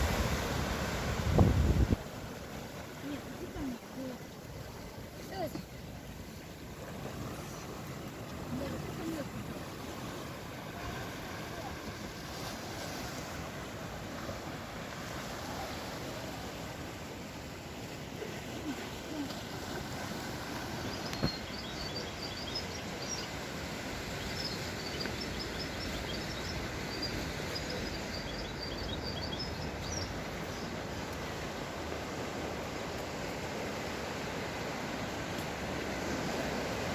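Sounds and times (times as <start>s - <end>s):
ocean surf breaking: 0.0s - 24.8s
wind: 0.0s - 36.9s.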